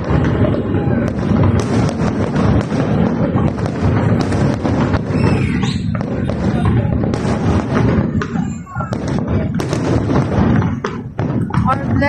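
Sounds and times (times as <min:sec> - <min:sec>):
fireworks and firecrackers bangs: 0:00.0 - 0:12.0
whistling glide: 0:05.1 - 0:05.9.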